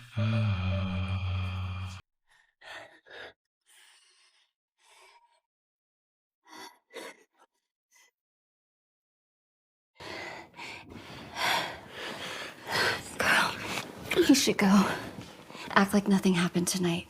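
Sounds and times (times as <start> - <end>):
background music: 0.0 - 2.0
person gasping and sighing: 0.0 - 2.0.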